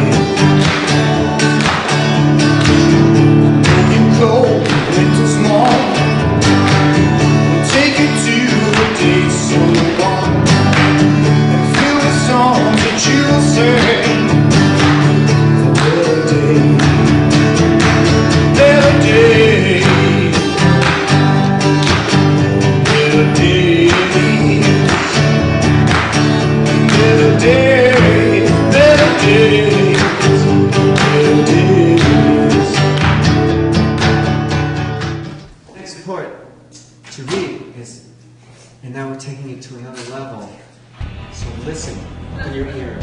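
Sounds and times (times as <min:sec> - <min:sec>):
person singing: 0:00.0 - 0:01.6, 0:03.4 - 0:06.3, 0:07.5 - 0:10.7, 0:11.3 - 0:14.5, 0:15.2 - 0:17.3, 0:18.4 - 0:21.4, 0:22.2 - 0:25.4, 0:26.6 - 0:33.0
guitar chords: 0:00.0 - 0:35.7, 0:40.7 - 0:43.0.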